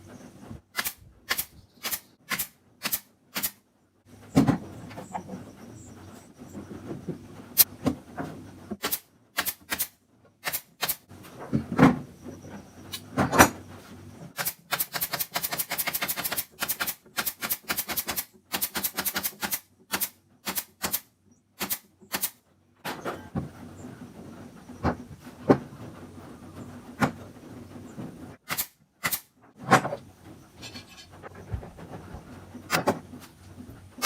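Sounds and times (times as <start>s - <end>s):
sharp clicks and knocks: 28.4s - 34.0s.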